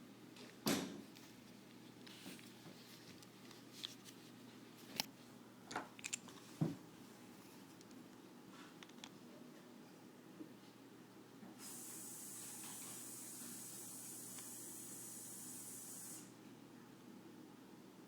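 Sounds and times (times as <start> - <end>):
clicks and knocks of parts handled: 4.8 - 5.1, 5.7 - 6.5, 8.8 - 9.2.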